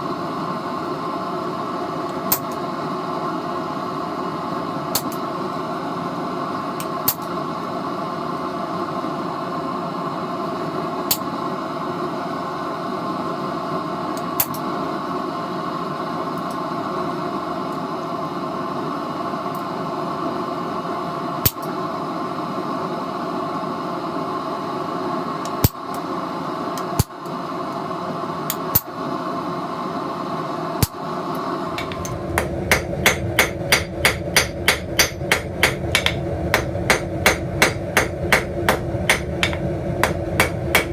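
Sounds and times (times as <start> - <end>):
mechanical hum: 0.0 - 40.9
hammer blows on steel: 31.8 - 40.9.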